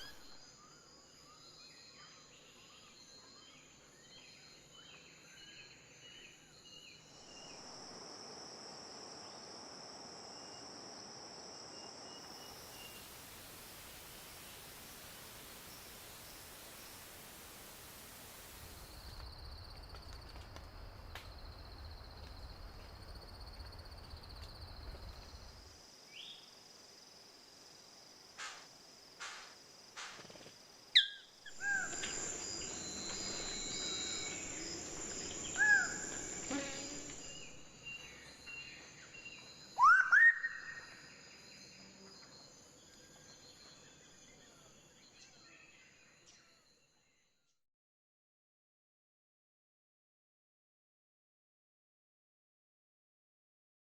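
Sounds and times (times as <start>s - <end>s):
high insect drone: 0.0s - 20.3s, 20.9s - 39.8s, 40.4s - 45.9s
sharp bird calls: 31.0s - 37.6s.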